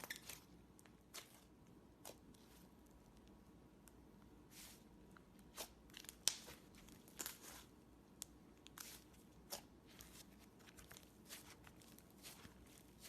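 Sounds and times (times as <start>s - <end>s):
slime crackling and popping: 5.5s - 13.0s.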